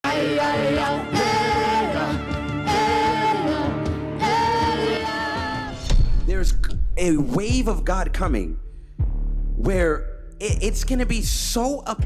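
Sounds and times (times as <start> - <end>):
instrumental backing music: 0.0 - 6.0.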